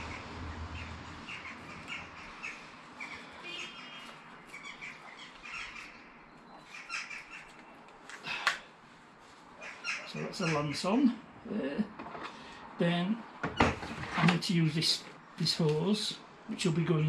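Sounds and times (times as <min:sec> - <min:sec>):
small birds chirping: 0:00.0 - 0:07.9, 0:09.6 - 0:11.1.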